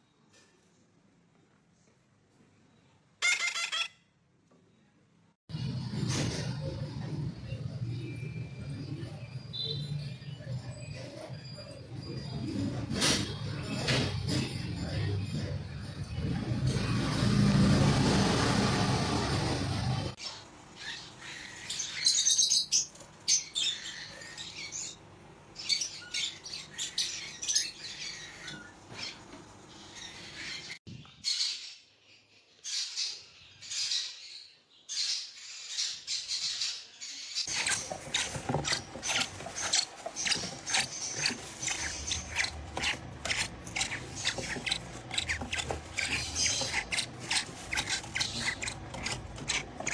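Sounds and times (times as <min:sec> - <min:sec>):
parrot chirping and squeaking: 0:03.2 - 0:04.0, 0:37.4 - 0:49.9
quick clicks and scratchy noises: 0:37.5 - 0:49.9.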